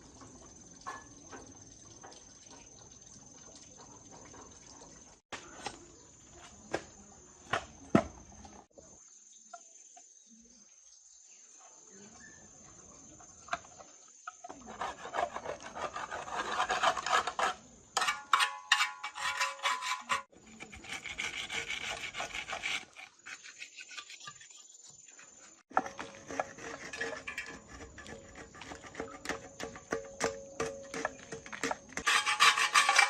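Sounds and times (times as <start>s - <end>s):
rasping and scraping strokes: 14.4s - 33.0s.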